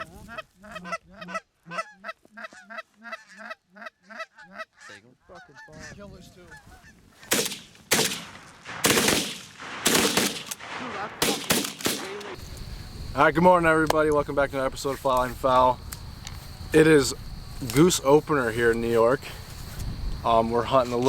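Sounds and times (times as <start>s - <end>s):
geese honking: 0.0s - 7.3s
shotgun shots: 7.3s - 12.4s.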